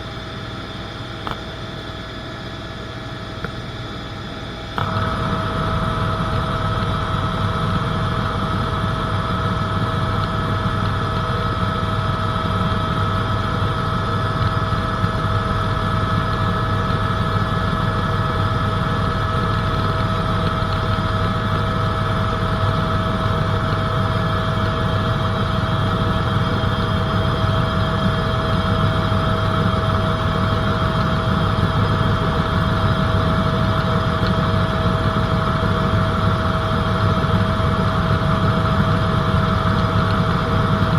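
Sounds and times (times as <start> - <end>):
helicopter rotor and engine drone: 0.0 - 40.9
high whine: 16.2 - 38.2.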